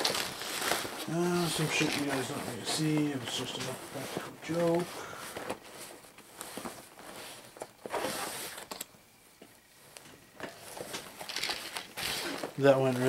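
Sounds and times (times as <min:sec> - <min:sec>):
rustling in a nylon backpack: 0:00.0 - 0:08.8, 0:09.8 - 0:13.0.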